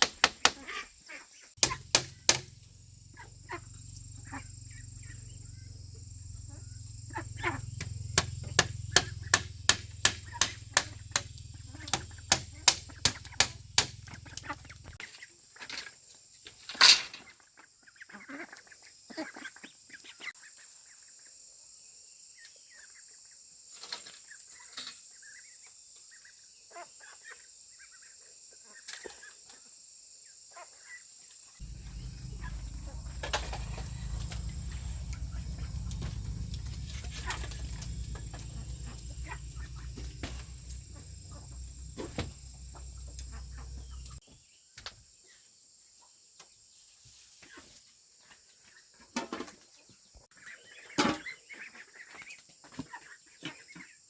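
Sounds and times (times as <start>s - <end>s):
tool strikes on bamboo: 0.0s - 0.8s, 1.6s - 2.6s, 7.8s - 14.6s, 31.6s - 42.5s
farm birds calling: 0.0s - 15.4s, 31.6s - 44.3s, 50.3s - 54.0s
loud knock: 1.6s - 2.5s
low steady hum: 31.6s - 44.2s.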